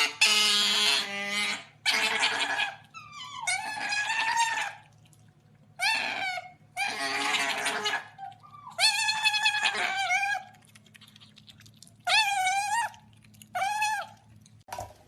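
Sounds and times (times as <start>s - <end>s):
animal crying out: 0.0s - 4.8s, 5.8s - 10.6s, 12.0s - 14.3s.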